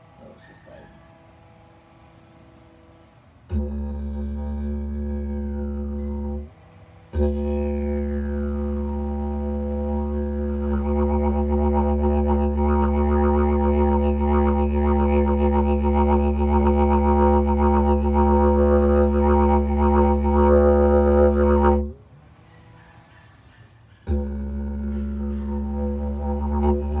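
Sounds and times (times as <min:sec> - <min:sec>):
didgeridoo droning: 0:03.5 - 0:22.0, 0:24.0 - 0:27.0.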